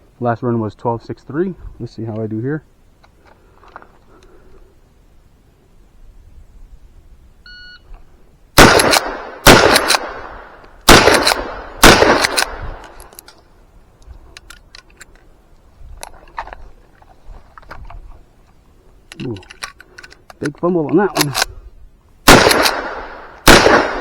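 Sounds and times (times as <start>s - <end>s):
loud rifle shots echoing: 8.6s - 12.9s, 22.2s - 24.0s
clicks and rattles of reloading: 19.1s - 21.5s.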